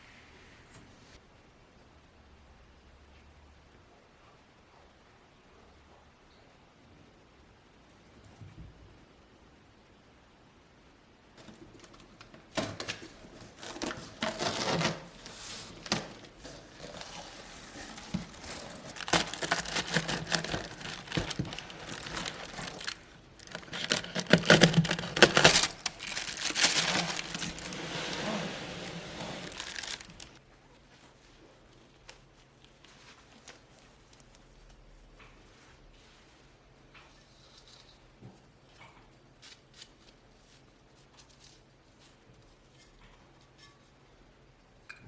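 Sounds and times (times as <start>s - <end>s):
crinkling and rustling: 11.4s - 44.0s.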